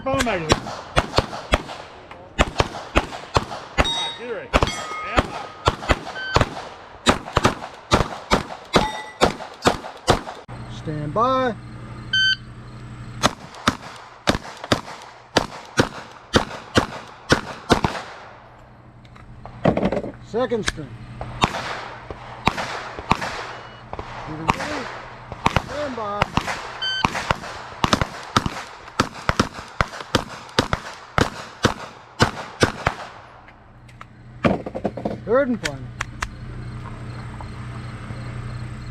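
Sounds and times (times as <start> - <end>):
pistol shots: 0.1 - 10.5, 13.2 - 18.4, 20.6 - 33.4.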